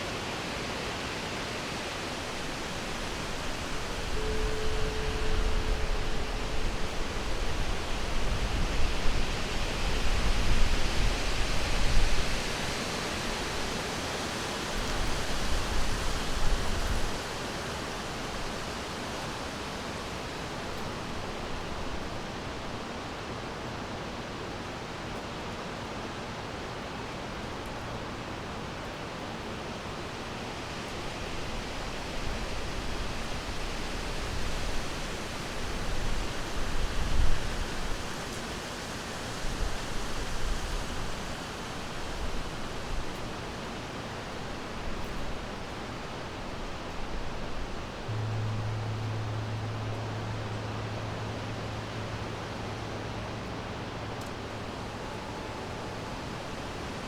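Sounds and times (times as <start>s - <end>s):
rushing water: 0.0s - 57.0s.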